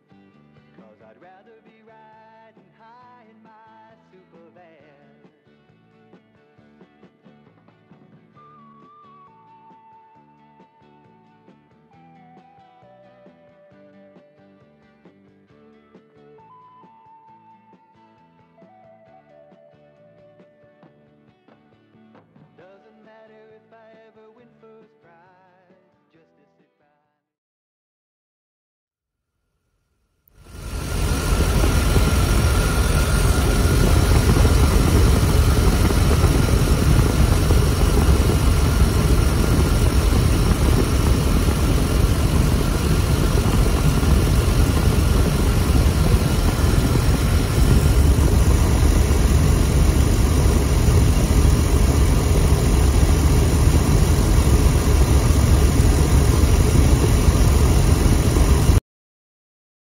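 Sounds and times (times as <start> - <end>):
van engine running: 30.5 - 58.8.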